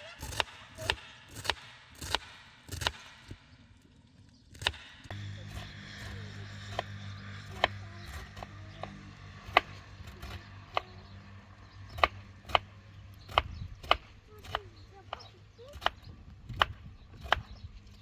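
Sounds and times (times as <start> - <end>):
low hum: 0.0 - 18.0
knife chopping on wooden board: 0.2 - 3.4, 4.6 - 10.9, 11.9 - 17.6.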